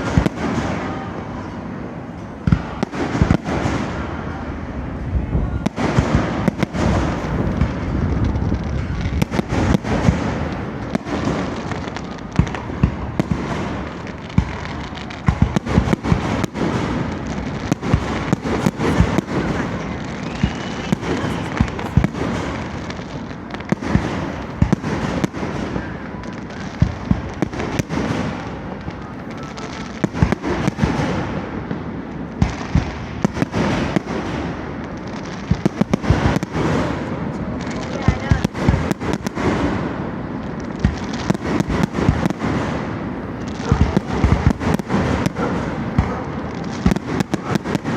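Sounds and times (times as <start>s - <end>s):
fireworks bangs and crackles: 0.0s - 47.9s
echoing booms rumbling: 4.0s - 25.0s.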